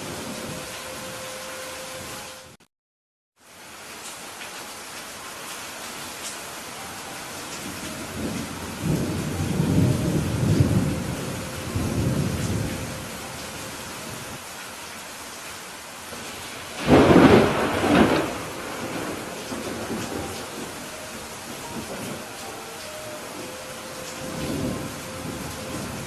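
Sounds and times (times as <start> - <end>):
steady rain: 0.0 - 2.6, 3.4 - 26.0
thunder rumbling: 7.6 - 14.4, 16.1 - 26.0
sharp thunder clap: 16.8 - 20.7.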